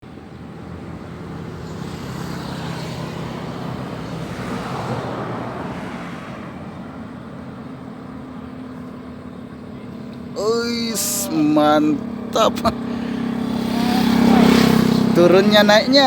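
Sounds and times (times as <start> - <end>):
engine droning: 0.0 - 16.0.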